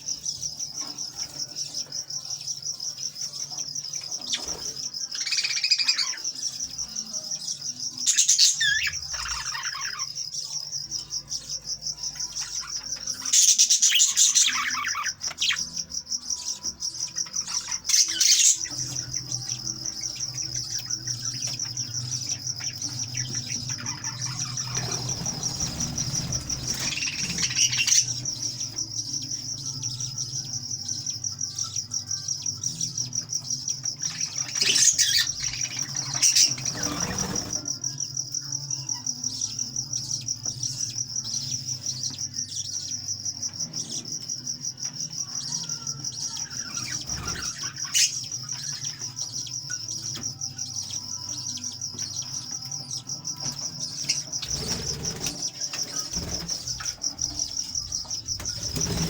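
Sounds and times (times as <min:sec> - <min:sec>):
parrots chattering: 0:05.1 - 0:06.4, 0:08.1 - 0:10.3, 0:17.1 - 0:28.5, 0:34.0 - 0:37.6
parrots squawking: 0:05.2 - 0:06.2, 0:08.1 - 0:10.1, 0:22.6 - 0:28.4, 0:34.0 - 0:37.6.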